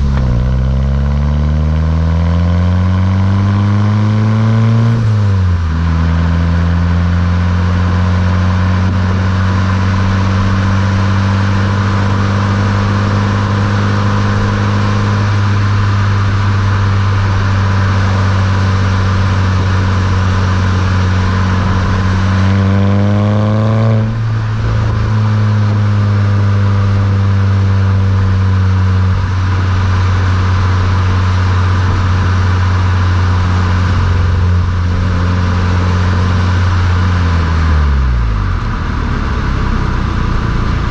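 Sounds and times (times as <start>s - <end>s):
car engine running: 0.0s - 40.9s.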